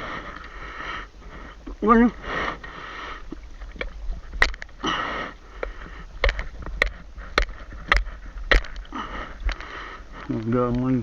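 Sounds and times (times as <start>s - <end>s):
person breathing hard: 0.0s - 3.4s, 4.8s - 10.4s
sharp knocks or clicks: 3.8s - 4.7s, 5.6s - 8.9s.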